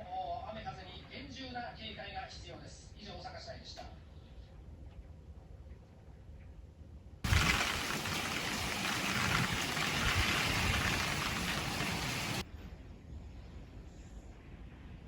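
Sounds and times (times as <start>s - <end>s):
heavy rain: 7.3s - 12.4s.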